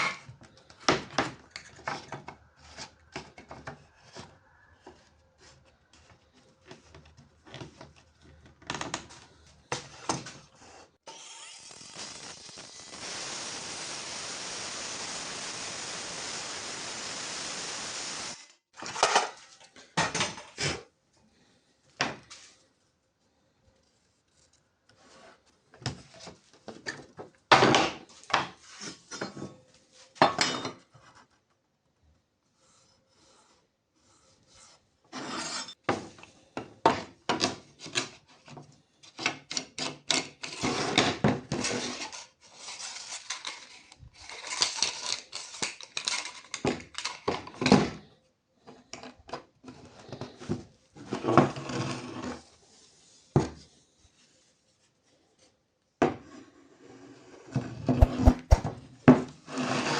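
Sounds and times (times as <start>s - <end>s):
rubbing scrapes: 58.0s - 58.7s.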